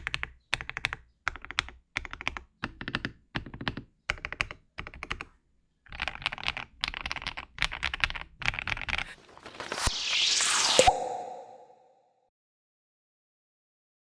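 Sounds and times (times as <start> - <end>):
mechanical keyboard typing: 0.0 - 5.3, 5.9 - 9.2.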